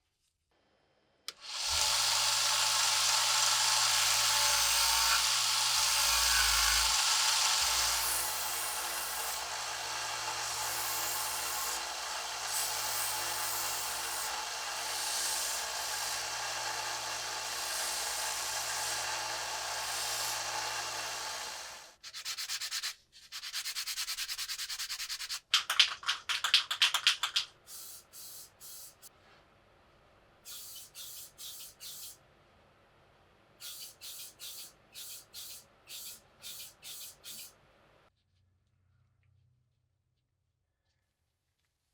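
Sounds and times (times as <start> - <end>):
power tool running: 1.3 - 22.0
hand sanding strokes: 7.0 - 29.1, 30.5 - 32.2, 33.6 - 37.5.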